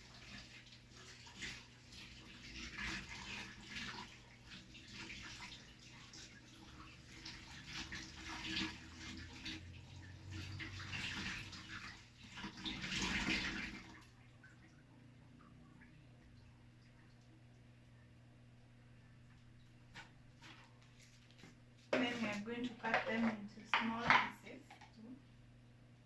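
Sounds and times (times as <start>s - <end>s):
water splashing and sloshing: 0.0s - 18.2s.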